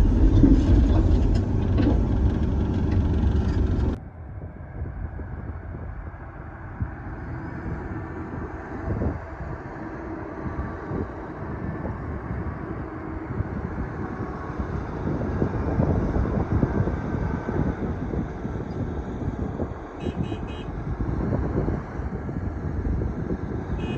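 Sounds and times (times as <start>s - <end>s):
knocks and clatter: 0.0s - 4.0s
excavator engine and hydraulics: 0.0s - 4.4s.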